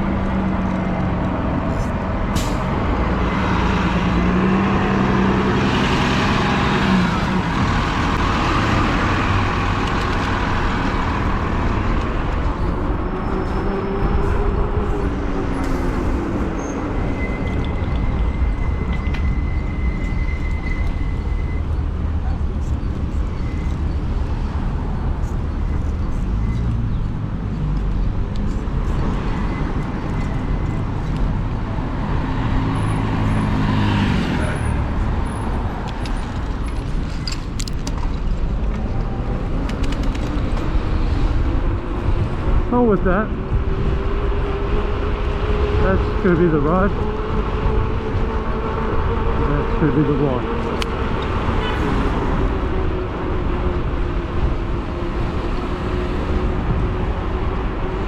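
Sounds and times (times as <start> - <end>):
motor vehicles passing: 0.0 - 58.0
wind noise on microphone: 34.2 - 58.0.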